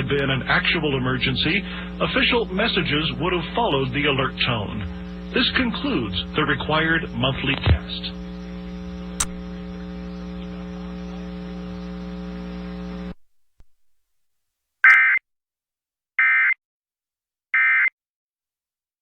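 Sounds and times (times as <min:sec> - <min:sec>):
steady electrical hum: 0:00.0 - 0:13.9
click: 0:00.1 - 0:00.3, 0:09.2 - 0:09.7, 0:13.0 - 0:13.9
loud data burst tones: 0:00.5 - 0:10.6.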